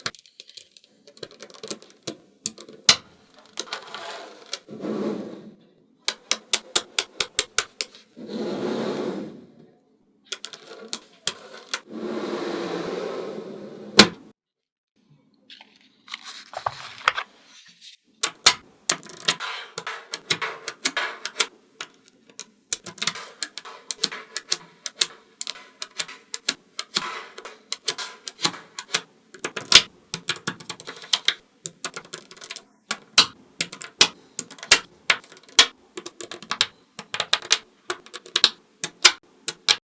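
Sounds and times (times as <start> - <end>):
magnetic balls clicking together: 6.1 - 8.0, 18.2 - 39.8.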